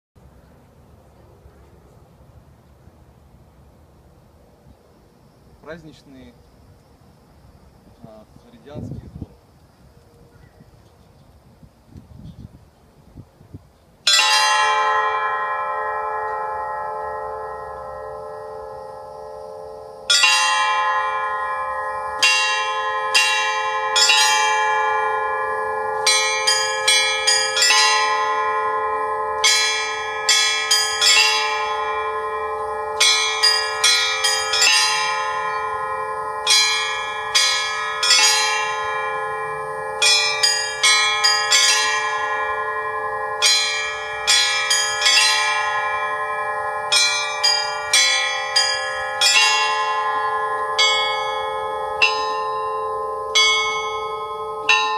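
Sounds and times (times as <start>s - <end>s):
church bells pealing: 14.1s - 54.9s.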